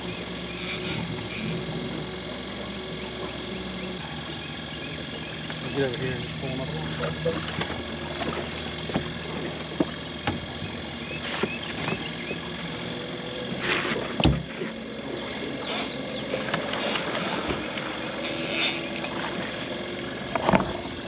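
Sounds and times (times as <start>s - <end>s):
boat motor idling: 0.0s - 21.0s
knocks on boat: 7.0s - 10.7s, 14.1s - 14.7s, 20.3s - 20.8s.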